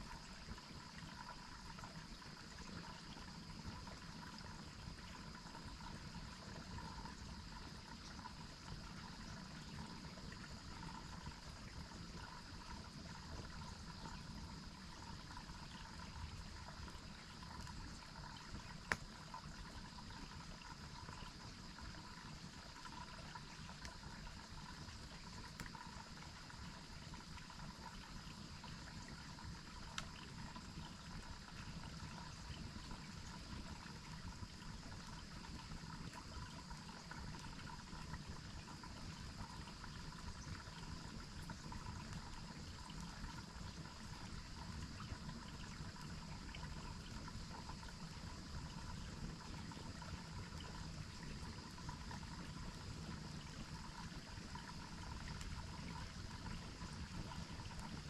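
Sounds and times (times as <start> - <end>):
campfire popping: 17.2 - 21.2, 22.8 - 26.0, 29.3 - 30.9
waterfall and stream running: 18.7 - 19.1.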